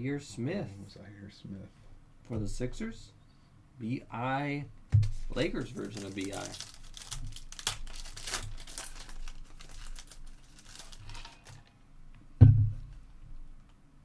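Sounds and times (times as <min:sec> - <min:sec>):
cards rustling: 0:05.0 - 0:11.7
wrapper crinkling: 0:05.2 - 0:11.7
dull thump: 0:12.4 - 0:13.0.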